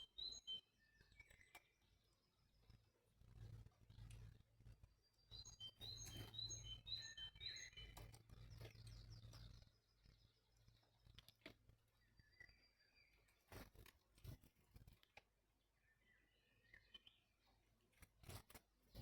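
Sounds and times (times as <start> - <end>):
small bird chirping: 0.0 - 2.7, 3.9 - 13.8, 15.8 - 18.3
faint clicks: 11.0 - 11.7.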